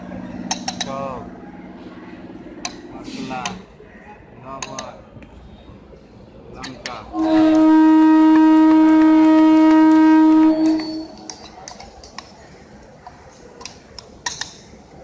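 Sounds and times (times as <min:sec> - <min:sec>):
train horn blast: 0:07.1 - 0:11.4.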